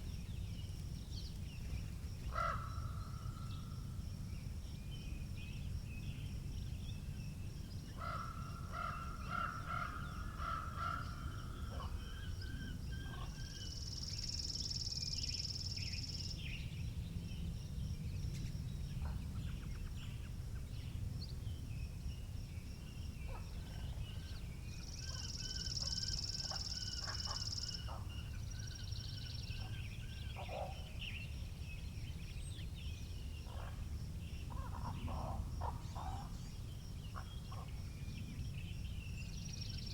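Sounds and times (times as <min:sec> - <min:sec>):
birds calling and chirping: 0:23.2 - 0:31.3, 0:32.0 - 0:38.4
wind rumbling on microphone: 0:29.6 - 0:39.9.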